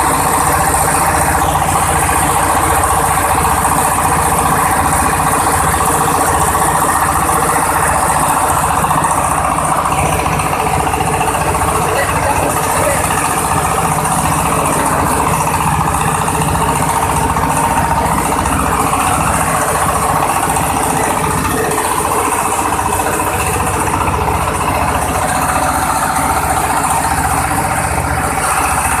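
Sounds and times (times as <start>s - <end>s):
chopper machine engine droning: 0.0s - 29.0s.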